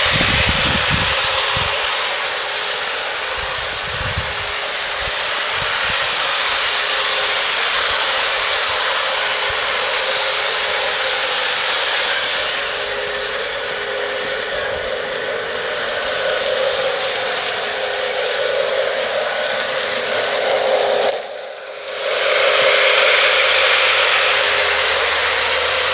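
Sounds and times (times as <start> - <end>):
wind buffeting microphone: 0.0 - 6.6
model train motor whirring: 0.0 - 25.9
steady hum: 0.0 - 25.9.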